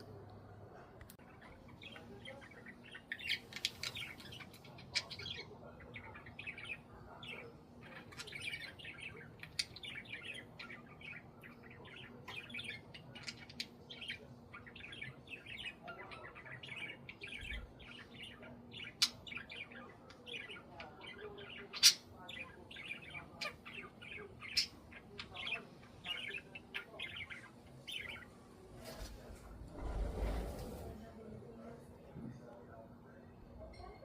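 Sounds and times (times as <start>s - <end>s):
budgerigars chattering: 1.5s - 28.3s.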